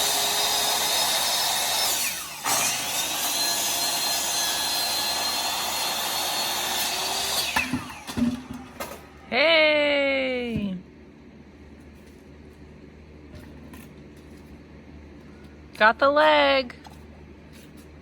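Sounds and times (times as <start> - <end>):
electric saw cutting wood: 0.0 - 9.1.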